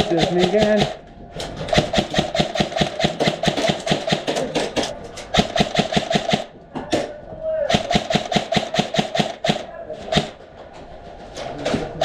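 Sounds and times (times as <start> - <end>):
airsoft gun firing full-auto: 0.0 - 1.0, 1.7 - 4.5, 5.3 - 6.5, 7.7 - 10.4.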